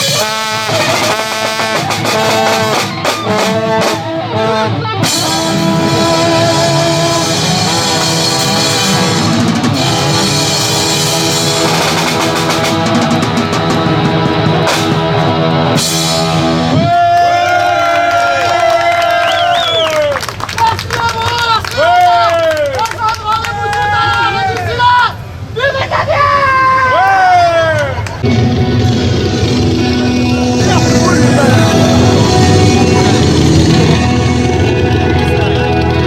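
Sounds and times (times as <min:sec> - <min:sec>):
bending guitar notes: 0:00.0 - 0:16.9, 0:28.2 - 0:36.0
rock band playing live: 0:00.0 - 0:16.9, 0:28.2 - 0:36.0.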